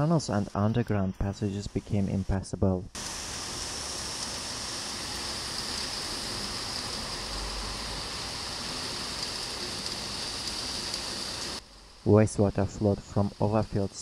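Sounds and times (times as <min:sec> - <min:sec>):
rain and floodwater rushing: 0:03.0 - 0:12.2.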